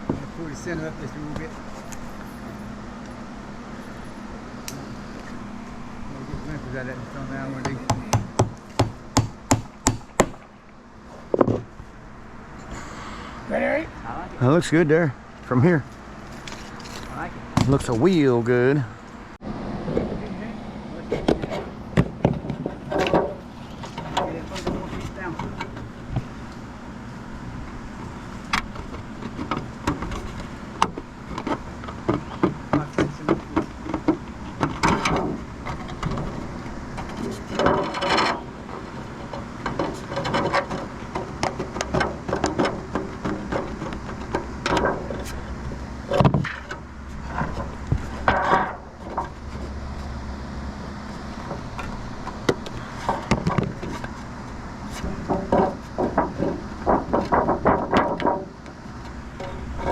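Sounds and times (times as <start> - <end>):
hammer knocks on wood: 7.6 - 10.4.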